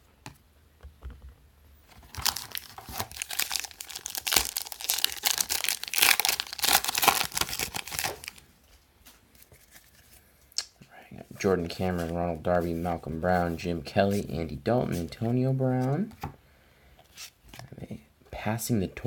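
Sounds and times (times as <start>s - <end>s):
wrapper tearing and crinkling: 1.9s - 8.4s.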